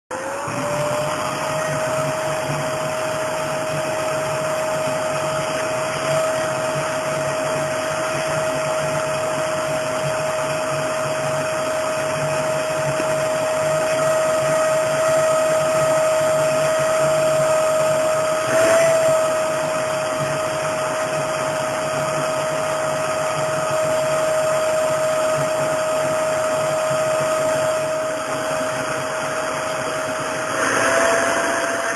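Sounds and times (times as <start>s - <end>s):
vacuum cleaner motor whine: 0.1s - 31.9s.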